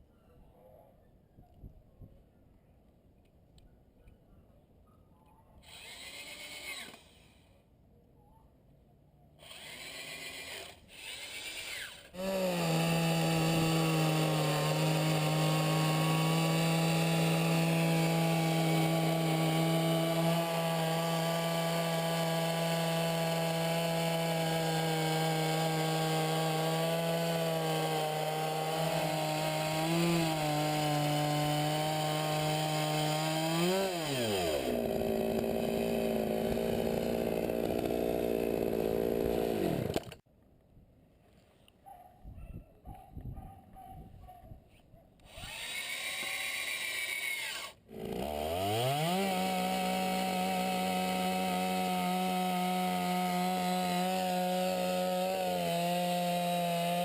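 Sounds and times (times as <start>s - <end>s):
chainsaw ripping a log: 9.4s - 40.2s, 45.3s - 57.0s.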